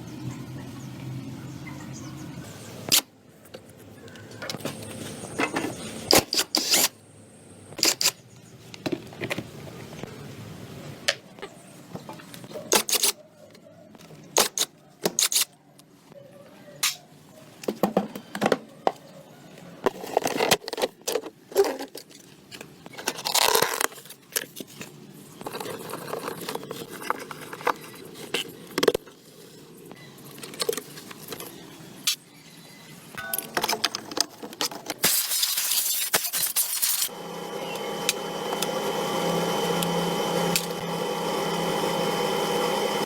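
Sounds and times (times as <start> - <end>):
tools and metal parts clinking: 33.2 - 37.1.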